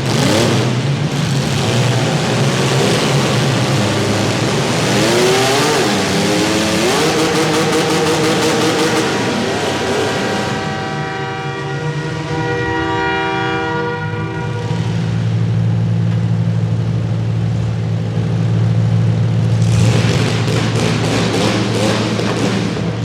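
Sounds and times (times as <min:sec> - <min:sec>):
engine and crash noise: 0:00.0 - 0:23.0
engines idling: 0:00.0 - 0:23.0
loud horn chord: 0:05.0 - 0:15.3.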